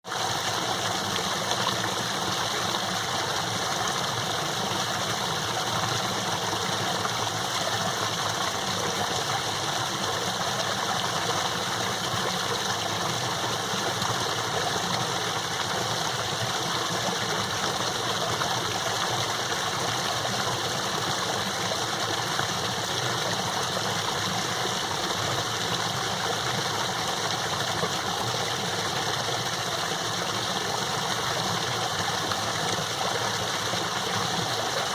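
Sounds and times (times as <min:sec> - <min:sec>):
small waterfall rushing: 0:00.0 - 0:34.9.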